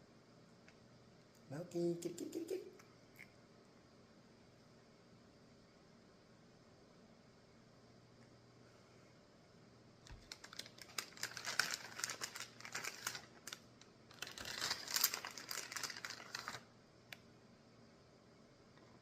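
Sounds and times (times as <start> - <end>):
cat treats rattling: 10.1 - 16.6.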